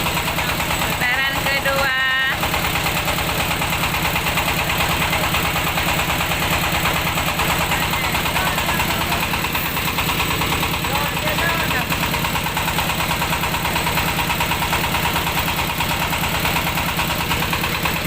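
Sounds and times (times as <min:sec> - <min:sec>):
milling machine engine chugging: 0:00.0 - 0:18.0
person speaking: 0:10.7 - 0:12.3.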